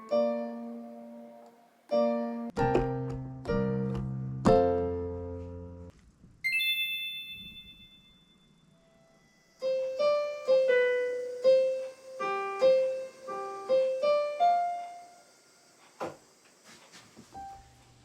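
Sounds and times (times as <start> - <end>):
electronic keyboard piano melody: 0.0 - 5.9, 9.6 - 14.9
high ringing tone: 6.5 - 13.2.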